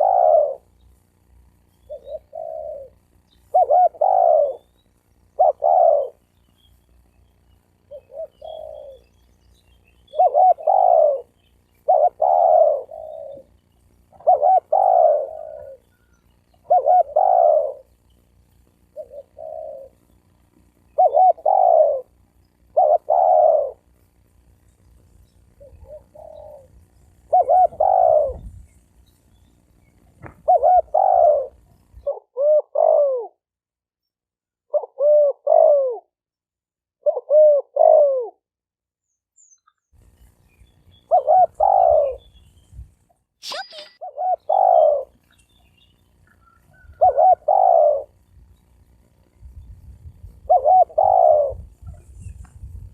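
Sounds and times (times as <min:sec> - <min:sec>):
doves cooing: 0:00.0 - 0:00.8, 0:01.8 - 0:06.3, 0:07.7 - 0:09.3, 0:10.0 - 0:18.1, 0:18.8 - 0:24.0, 0:25.5 - 0:28.5, 0:30.2 - 0:33.4, 0:34.7 - 0:36.1, 0:37.0 - 0:38.4, 0:41.0 - 0:42.3, 0:43.4 - 0:45.3, 0:46.2 - 0:48.8, 0:50.4 - 0:52.0
low background hum: 0:00.0 - 0:33.4, 0:39.4 - 0:52.9.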